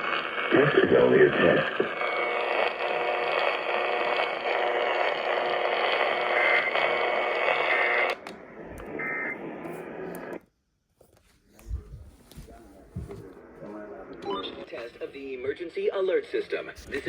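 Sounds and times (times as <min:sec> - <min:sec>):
radio static hiss: 0:00.0 - 0:10.4, 0:12.3 - 0:17.0.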